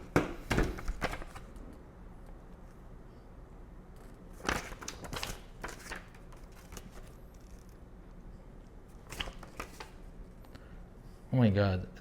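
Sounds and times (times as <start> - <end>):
paper rustling: 0.5 - 1.6, 4.3 - 7.7, 8.9 - 10.1.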